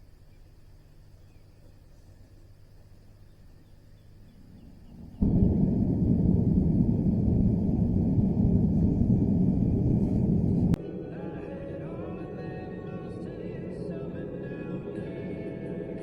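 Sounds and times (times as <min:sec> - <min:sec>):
loud low rumbling: 0:04.4 - 0:10.8.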